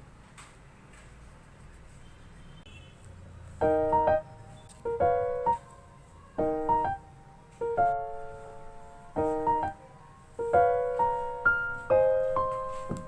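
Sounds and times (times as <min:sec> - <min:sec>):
soft piano chords: 0:03.4 - 0:13.0.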